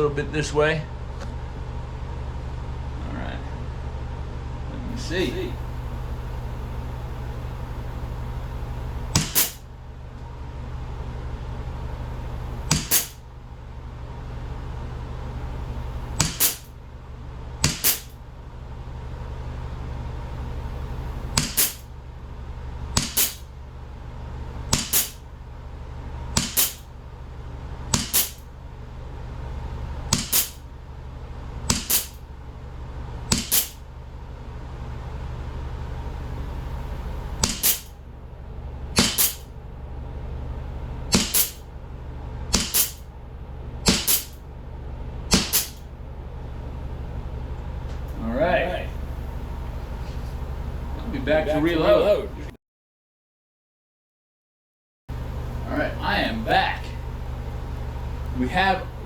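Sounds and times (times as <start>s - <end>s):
air pistol shots cracking: 5.0s - 9.7s, 12.1s - 13.2s, 15.9s - 16.7s, 17.6s - 18.2s, 21.4s - 21.9s, 23.0s - 23.5s, 24.7s - 25.3s, 26.4s - 26.9s, 27.9s - 28.5s, 30.1s - 30.6s, 31.7s - 32.2s, 33.3s - 33.8s, 37.4s - 38.0s, 39.0s - 39.5s, 41.1s - 41.7s, 42.5s - 43.1s, 43.8s - 44.4s, 45.3s - 45.9s.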